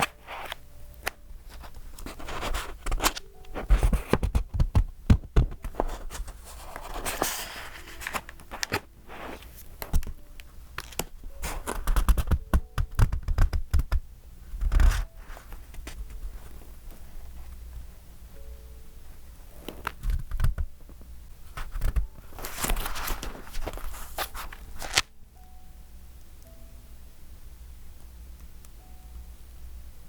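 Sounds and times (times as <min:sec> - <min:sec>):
soft thumps of pages: 0:00.0 - 0:10.2
paper pages rustling: 0:00.0 - 0:14.0, 0:19.5 - 0:25.1.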